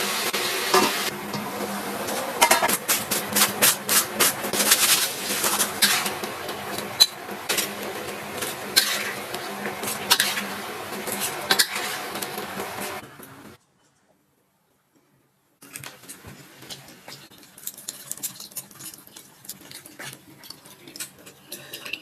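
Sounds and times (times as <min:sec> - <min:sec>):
low steady hum: 0:00.0 - 0:13.6
metal utensils clinking on dishes: 0:02.1 - 0:13.0.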